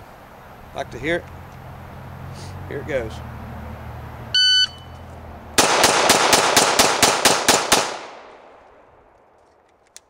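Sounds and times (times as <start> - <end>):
shot timer beep: 4.4 - 5.0
pistol firing rapid shots: 5.6 - 8.4.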